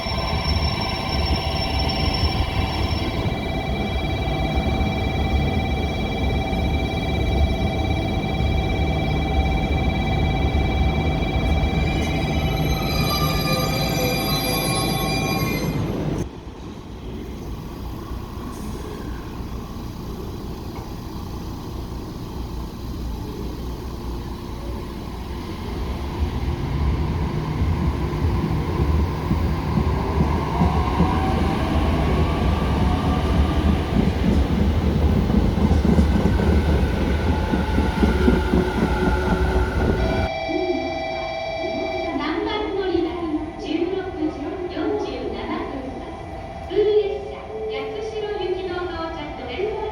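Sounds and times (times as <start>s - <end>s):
station chime: 0.0s - 16.2s, 36.9s - 42.8s
train rumbling past: 0.0s - 40.4s.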